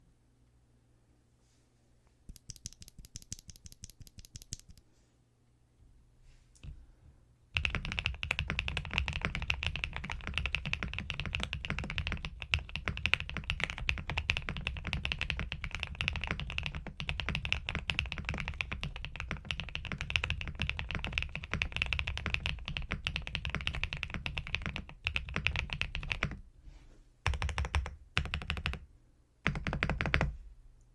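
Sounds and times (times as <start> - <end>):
typing on mechanical keyboard: 2.3 - 4.8, 7.6 - 26.4, 27.2 - 28.8, 29.4 - 30.4.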